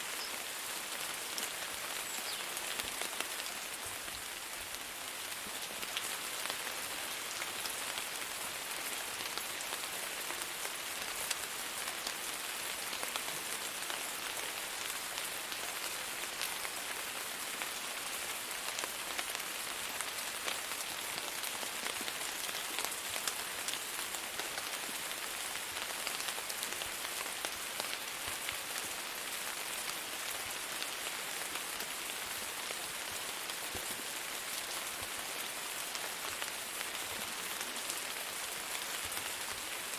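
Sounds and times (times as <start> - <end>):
steady rain on a surface: 0.0 - 39.9.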